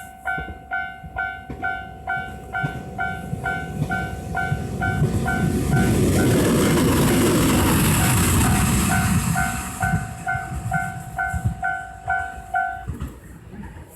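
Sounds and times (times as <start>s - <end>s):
crossing bell two-tone beep: 0.0s - 5.9s, 8.9s - 13.0s
train passing with wheel noise: 0.0s - 13.9s.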